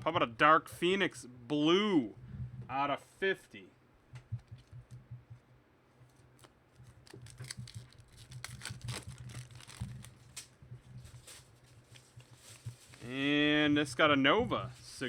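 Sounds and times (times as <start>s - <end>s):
card wrappers crinkling and tearing: 6.1s - 13.1s.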